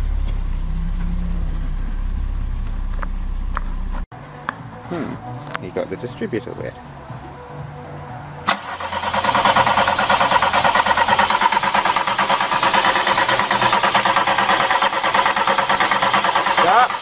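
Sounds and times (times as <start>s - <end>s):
engine cranking on starter motor: 8.5s - 17.0s.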